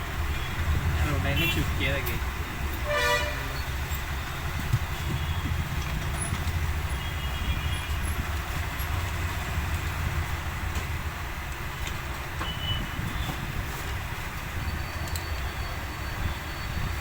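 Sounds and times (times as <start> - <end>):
road traffic rumble: 0.0 - 17.0
vehicle horn tooting: 2.8 - 3.6, 7.0 - 8.1, 12.4 - 13.4.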